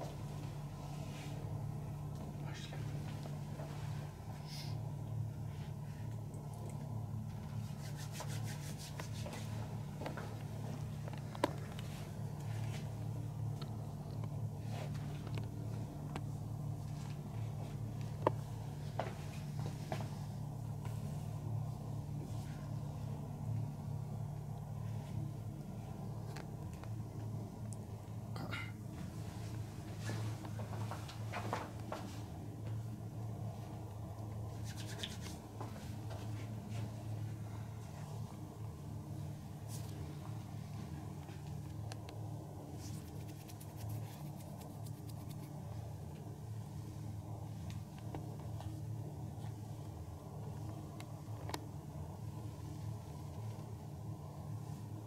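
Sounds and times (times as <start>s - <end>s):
steady low hum: 0.0s - 55.0s
hands rubbing skin: 7.6s - 9.6s, 42.9s - 45.6s.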